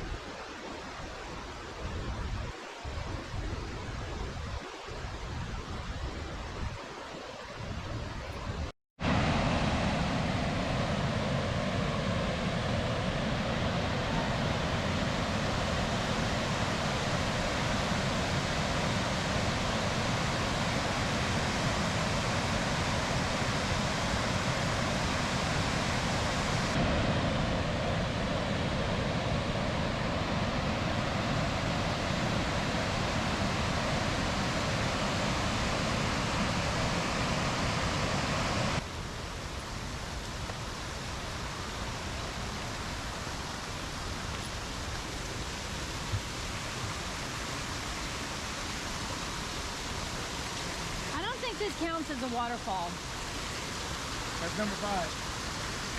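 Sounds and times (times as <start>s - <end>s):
waterfall and river rapids roar: 9.0s - 55.9s.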